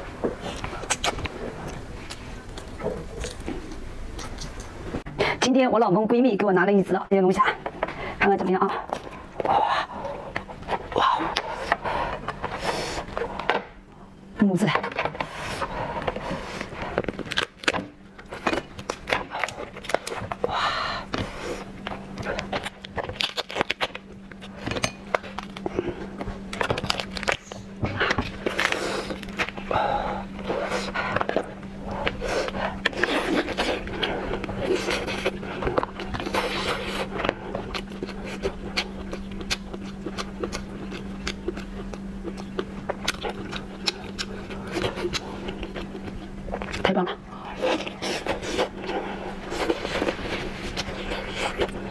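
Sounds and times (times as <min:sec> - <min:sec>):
steady low hum: 0:00.0 - 0:51.9
lobster shell cracking: 0:16.9 - 0:46.7
lobster shell cracking by hand: 0:17.0 - 0:30.5.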